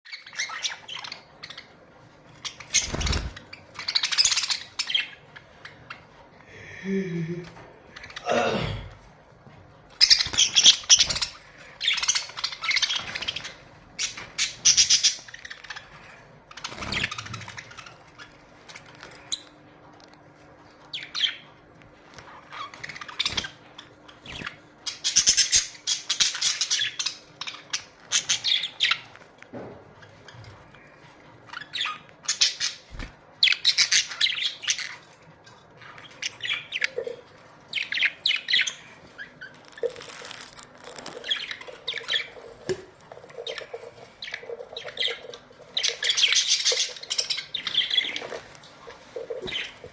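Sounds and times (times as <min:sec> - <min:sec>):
budgerigars chattering and warbling: 0:02.4 - 0:06.1, 0:10.0 - 0:18.4, 0:41.1 - 0:49.9.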